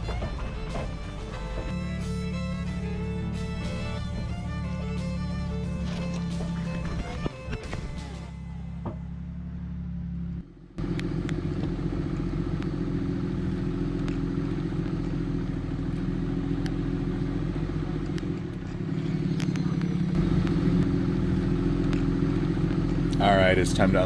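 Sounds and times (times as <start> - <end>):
diesel engine running: 0.8 - 7.2, 9.5 - 24.0
light ticks: 10.8 - 24.0.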